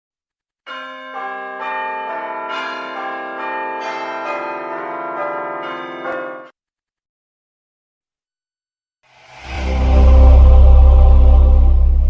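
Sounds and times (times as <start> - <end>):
church bells pealing: 0.7 - 6.5.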